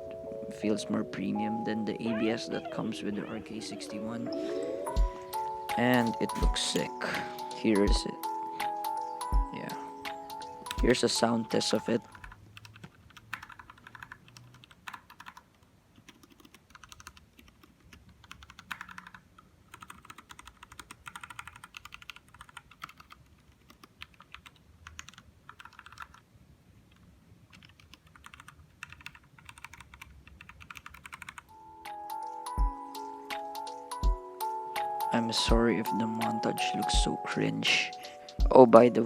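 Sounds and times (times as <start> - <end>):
music: 0.0 - 12.1, 31.5 - 39.0.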